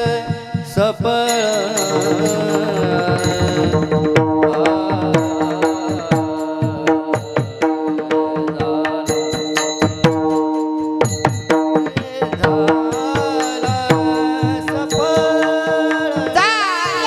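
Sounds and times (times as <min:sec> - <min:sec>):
drum playing fast rhythm: 0:00.0 - 0:17.0
bright metallic ringing: 0:09.1 - 0:12.2.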